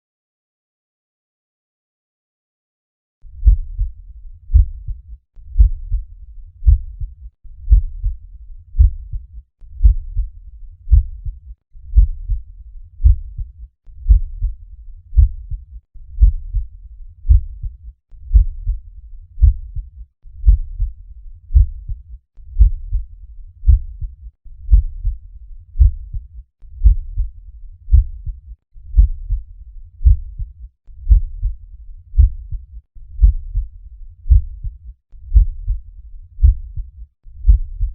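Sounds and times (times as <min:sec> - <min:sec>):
heartbeat lub-dub: 0:03.4 - 0:14.6, 0:15.2 - 0:25.2, 0:25.8 - 0:31.6, 0:32.2 - 0:37.9.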